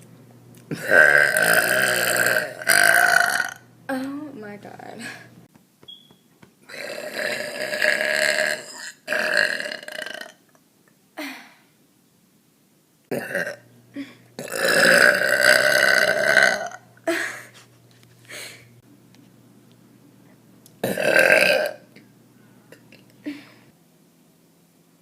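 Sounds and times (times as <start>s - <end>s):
woman burping loudly: 0.7s - 4.1s, 6.7s - 10.4s, 13.1s - 17.2s, 20.8s - 22.1s.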